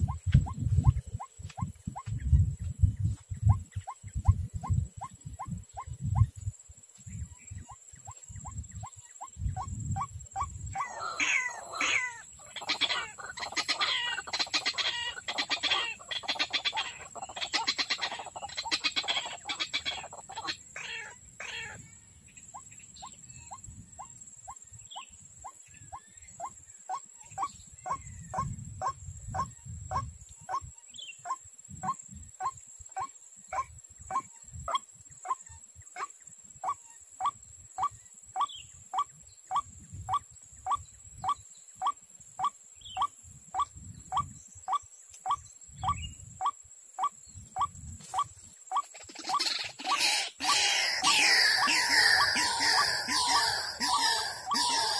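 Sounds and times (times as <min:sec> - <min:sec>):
bird making harsh croaking calls: 0:09.6 - 0:21.8, 0:48.7 - 0:54.9.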